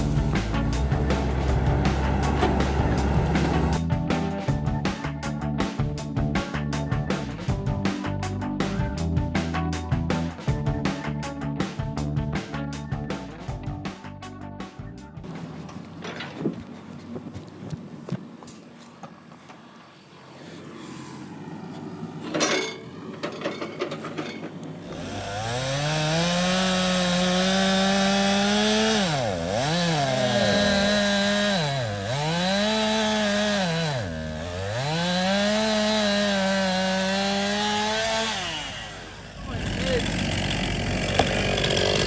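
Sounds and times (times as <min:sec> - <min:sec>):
chainsaw cutting wood: 0:00.0 - 0:04.3, 0:20.5 - 0:42.0.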